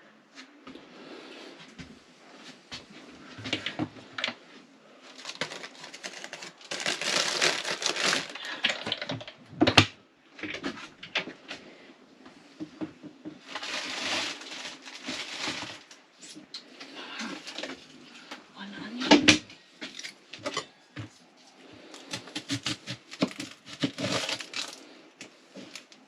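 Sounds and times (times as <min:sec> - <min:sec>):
plastic bags rustling: 0:04.9 - 0:09.4, 0:13.4 - 0:16.3, 0:17.2 - 0:18.3, 0:21.7 - 0:26.0.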